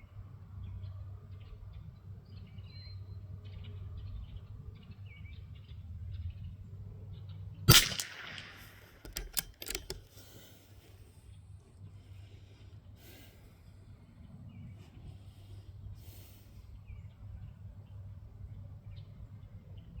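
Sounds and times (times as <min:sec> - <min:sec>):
rifle shot: 0:07.7 - 0:10.0
rifle bolt clicks: 0:07.7 - 0:10.2.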